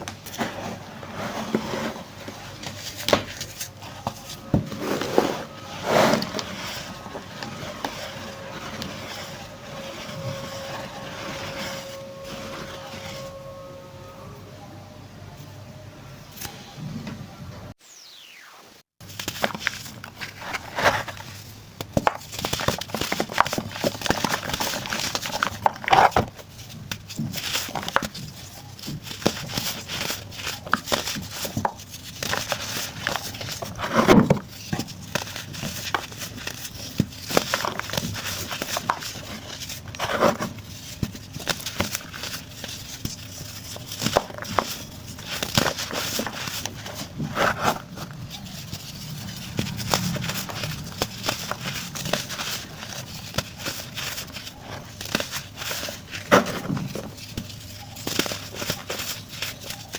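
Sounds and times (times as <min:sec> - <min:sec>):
baking soda blocks crunching: 0:19.1 - 0:59.9.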